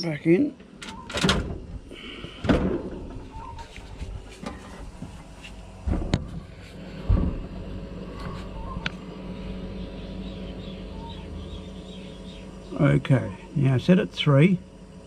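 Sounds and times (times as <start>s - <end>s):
steady low hum: 0.0s - 15.0s
fridge slide clunks and knocks: 0.9s - 7.6s
heavy thud: 1.4s - 3.3s, 5.8s - 6.4s, 7.0s - 7.6s.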